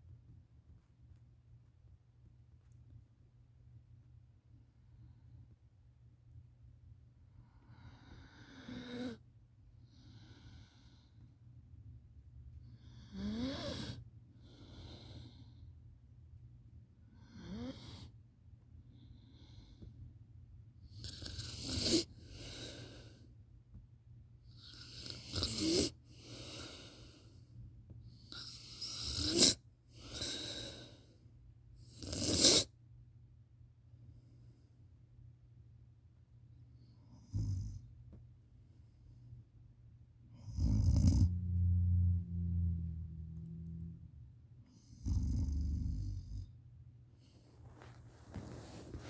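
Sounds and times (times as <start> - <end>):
quiet breathing: 7.2 - 11.6, 12.5 - 16.0, 17.0 - 20.2, 21.1 - 23.6, 24.5 - 31.4
person snoring: 40.5 - 42.5.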